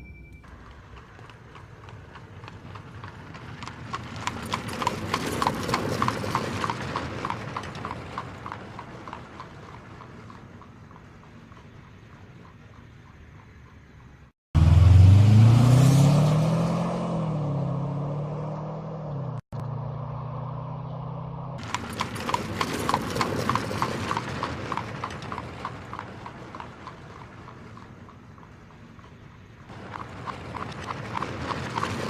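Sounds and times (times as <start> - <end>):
horse hoofbeats: 0.0 - 14.3, 21.6 - 32.0.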